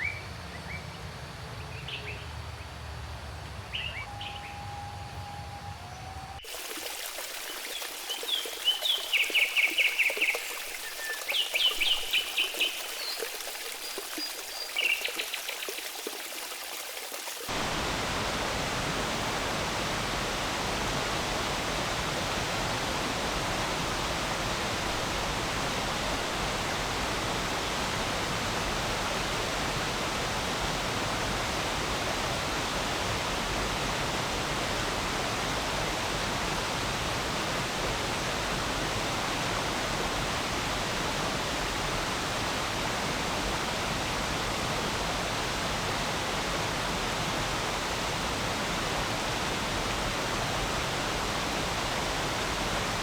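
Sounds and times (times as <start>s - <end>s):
water trickling: 6.4s - 22.2s
stream water rushing: 6.4s - 53.0s.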